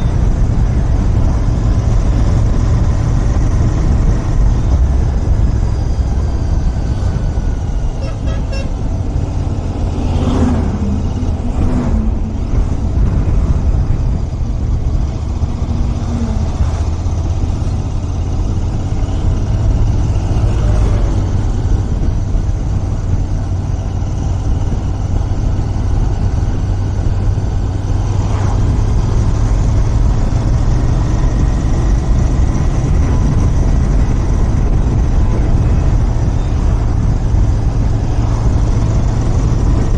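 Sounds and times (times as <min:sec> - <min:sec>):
motorcycle engine rumbling: 0:00.0 - 0:39.9.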